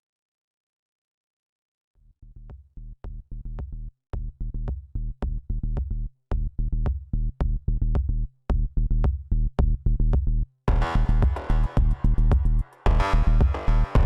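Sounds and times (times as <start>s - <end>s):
electronic music with pulsing bass: 10.7s - 14.0s.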